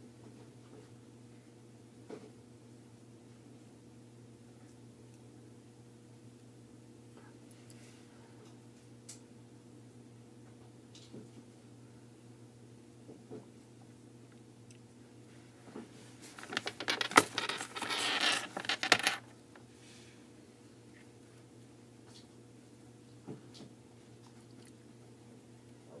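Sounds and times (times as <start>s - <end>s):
small hard objects clinking: 16.4s - 19.2s.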